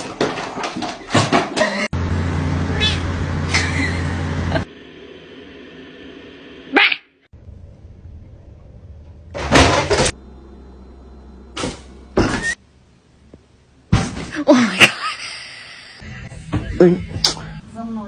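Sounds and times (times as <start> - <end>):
background hum: 1.7 - 16.5.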